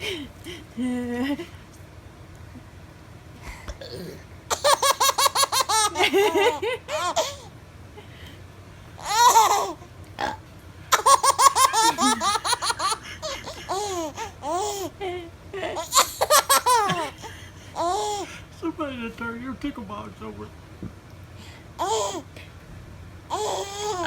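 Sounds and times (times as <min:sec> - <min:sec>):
baby laughing: 0:04.5 - 0:07.5, 0:09.0 - 0:15.0, 0:15.7 - 0:18.3, 0:21.8 - 0:22.2, 0:23.3 - 0:24.0.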